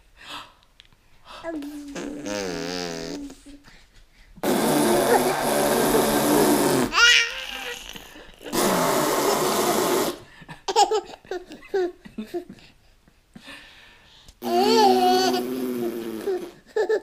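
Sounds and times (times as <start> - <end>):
child blowing raspberries: 2.0 - 3.4, 4.4 - 10.3, 14.4 - 16.6
child squealing: 6.9 - 8.0
child giggling babble: 14.4 - 15.6, 16.3 - 17.0.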